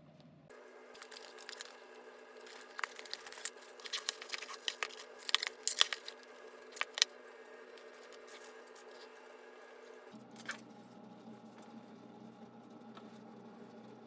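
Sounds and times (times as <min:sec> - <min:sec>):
crinkling rustling clicks: 0:01.0 - 0:07.1, 0:07.8 - 0:09.1.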